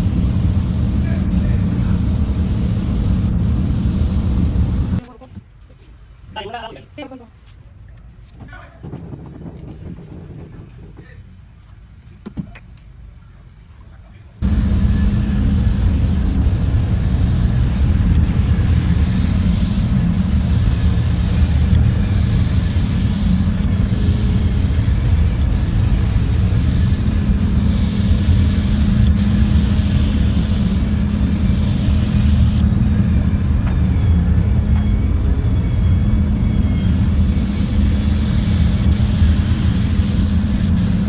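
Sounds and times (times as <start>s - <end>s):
air spray gun hissing: 0.0s - 5.0s, 14.4s - 32.7s, 36.8s - 41.0s
low steady hum: 0.0s - 5.4s, 14.4s - 41.0s.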